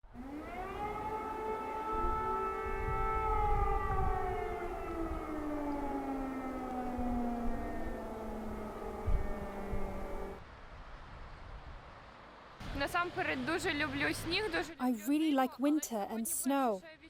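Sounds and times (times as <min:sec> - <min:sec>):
air raid siren wailing: 0:00.1 - 0:10.4.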